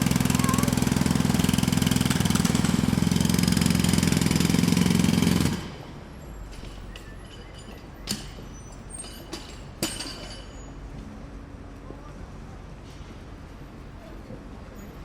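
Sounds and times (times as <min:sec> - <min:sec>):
jackhammer hammering: 0:00.0 - 0:06.0
low steady background noise: 0:05.8 - 0:15.0.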